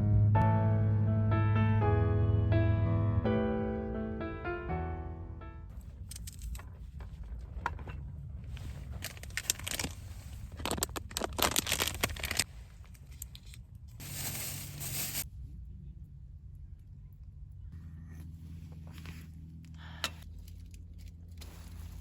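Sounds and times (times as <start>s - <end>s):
rustling and crinkling: 5.7s - 15.3s, 18.2s - 22.0s.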